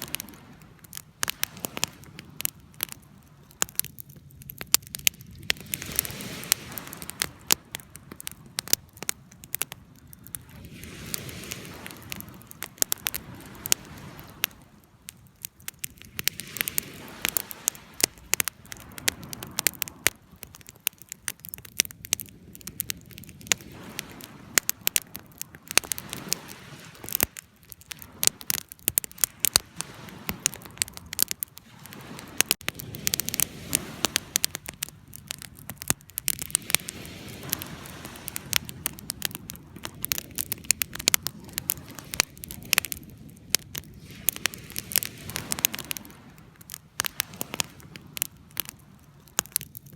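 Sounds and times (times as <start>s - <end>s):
wood fire crackling: 0.0s - 49.9s.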